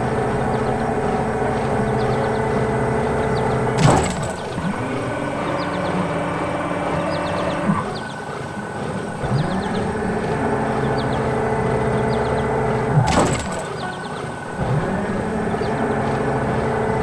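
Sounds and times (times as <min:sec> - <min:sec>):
heavy diesel machinery running: 0:00.0 - 0:17.0
loud machinery jolt: 0:03.6 - 0:05.6, 0:12.9 - 0:14.0.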